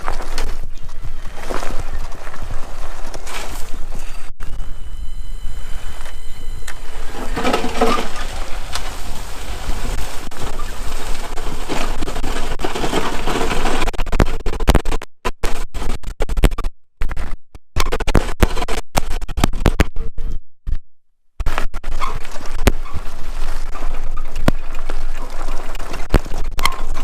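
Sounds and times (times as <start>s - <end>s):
plow blade scraping ground: 0.0s - 4.3s, 6.8s - 14.5s, 21.9s - 27.0s.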